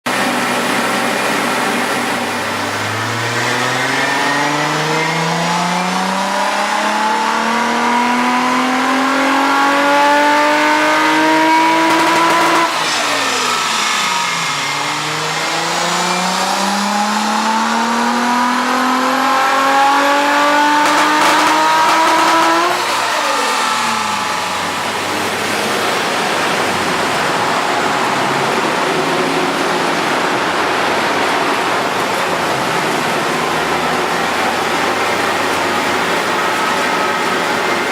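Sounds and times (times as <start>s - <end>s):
car engine revving on dyno: 0.0s - 37.9s
steady rushing noise: 21.0s - 37.9s.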